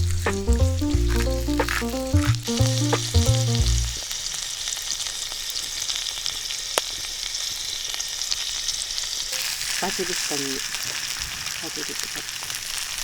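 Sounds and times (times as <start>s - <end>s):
background music with bass: 0.0s - 4.0s
food sizzling: 0.0s - 13.0s.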